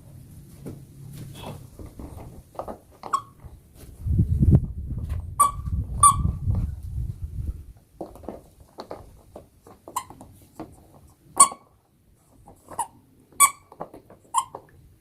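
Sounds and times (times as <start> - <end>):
squeaky toy squeaks: 3.0 - 3.4, 5.4 - 6.4, 9.9 - 10.2, 11.4 - 11.7, 12.7 - 14.7.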